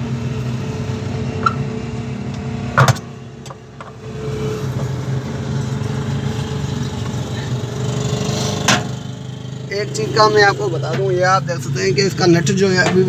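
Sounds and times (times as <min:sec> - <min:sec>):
low mechanical hum: 0:00.0 - 0:07.9.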